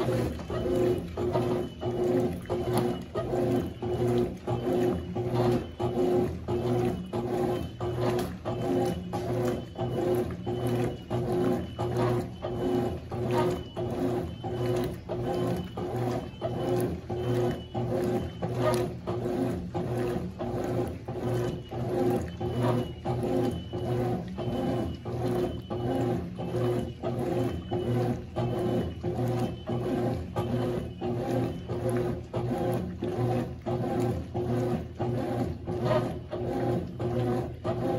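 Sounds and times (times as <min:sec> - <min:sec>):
washing machine agitating: 0:00.0 - 0:37.9.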